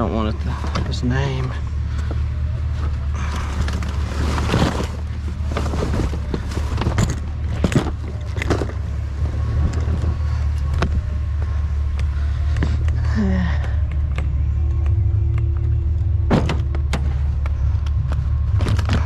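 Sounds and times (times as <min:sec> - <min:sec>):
vehicle engine idling: 0:00.0 - 0:19.0
rustling: 0:01.7 - 0:13.0.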